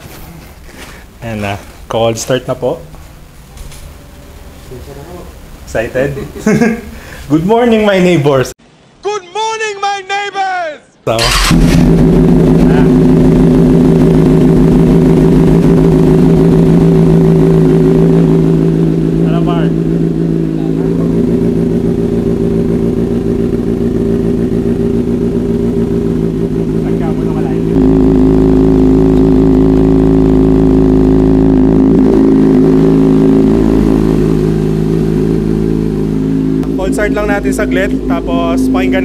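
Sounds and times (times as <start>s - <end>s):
motorcycle engine idling: 11.2s - 39.0s.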